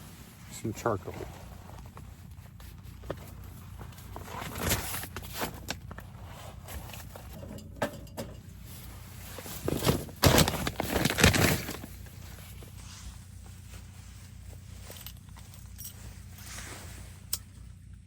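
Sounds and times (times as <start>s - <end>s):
rustling: 0.0s - 7.4s, 8.5s - 17.9s
charcoal clattering: 7.2s - 12.2s.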